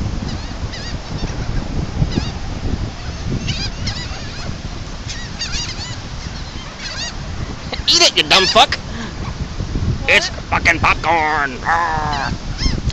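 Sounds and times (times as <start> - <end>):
seagulls squawking: 0.2 - 9.4, 11.9 - 12.9.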